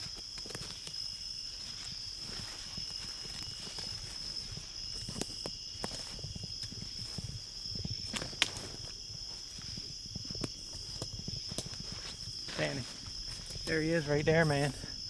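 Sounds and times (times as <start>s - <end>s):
crickets chirring: 0.0s - 15.0s
footsteps through undergrowth: 0.0s - 15.0s
twigs snapping: 8.0s - 9.0s, 9.6s - 13.8s.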